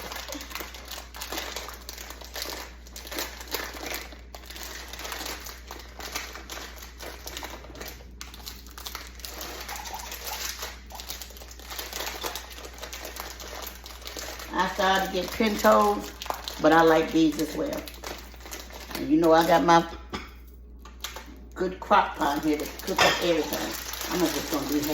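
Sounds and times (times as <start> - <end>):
dried beans rattling: 0.0 - 19.9, 21.9 - 24.9
plastic bag crinkling: 0.0 - 24.9.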